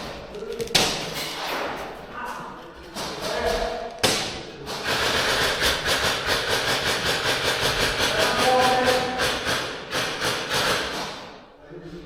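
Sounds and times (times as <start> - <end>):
airsoft gun firing full-auto: 4.8 - 11.2.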